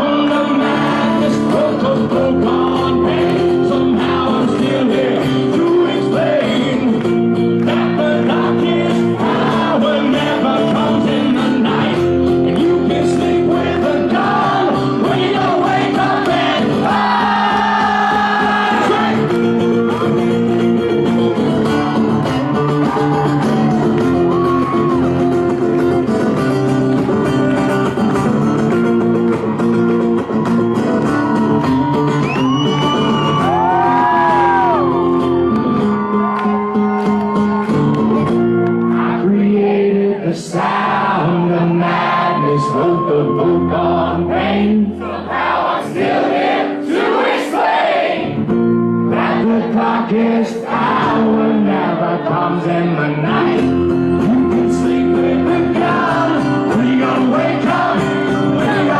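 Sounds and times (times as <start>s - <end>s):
person singing: 0.0s - 19.3s, 39.0s - 45.2s, 49.2s - 58.9s
acoustic guitar strumming: 0.0s - 47.5s, 48.2s - 58.9s
crowd shouting and whooping: 0.0s - 58.9s.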